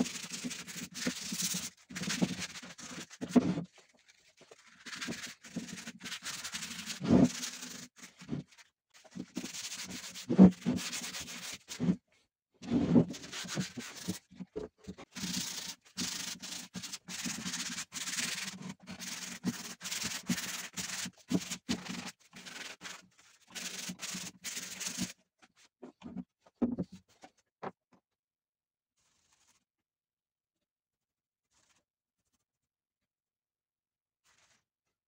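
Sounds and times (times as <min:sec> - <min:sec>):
sandpaper scraping wood: 0:00.0 - 0:12.0, 0:12.7 - 0:14.3, 0:15.0 - 0:25.2.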